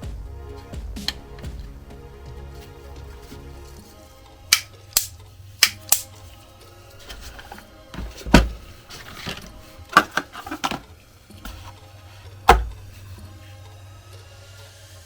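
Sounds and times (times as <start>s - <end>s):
charger packaging knocks and clicks: 12.5s - 12.9s.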